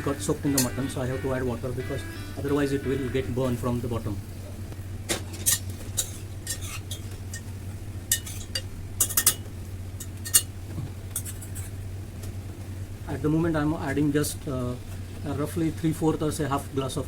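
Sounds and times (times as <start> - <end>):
steady low hum: 0.0 - 17.0
metal utensils clinking on pot: 0.5 - 0.8, 5.3 - 7.5, 8.1 - 10.5, 11.2 - 11.7.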